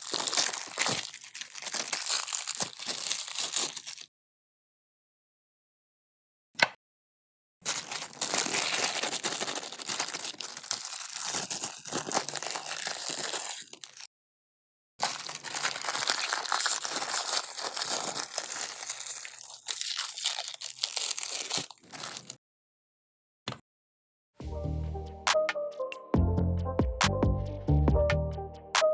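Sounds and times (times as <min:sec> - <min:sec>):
meat grinder crunching and squelching: 0:00.0 - 0:04.1, 0:07.6 - 0:14.1, 0:15.0 - 0:22.4.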